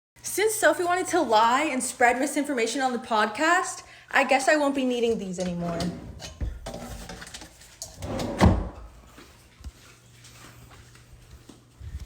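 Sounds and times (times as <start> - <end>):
knocks and rustles of handling: 5.3 - 12.0.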